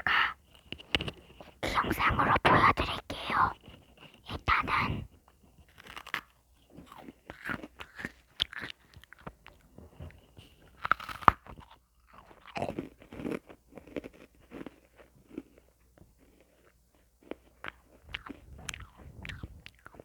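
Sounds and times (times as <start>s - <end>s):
crunchy chewing: 3.3s - 20.0s.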